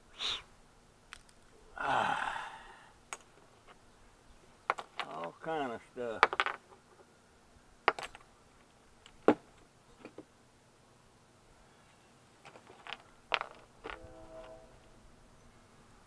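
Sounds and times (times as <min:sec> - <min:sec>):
small parts clicking and tapping: 0:01.1 - 0:01.5, 0:06.2 - 0:07.1, 0:12.4 - 0:14.1.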